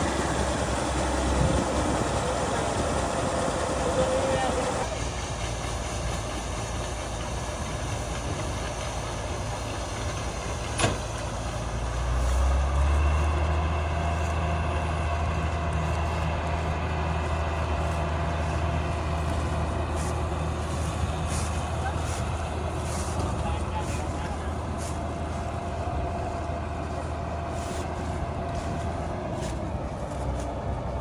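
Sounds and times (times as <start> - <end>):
diesel engine running: 0.0 - 31.0.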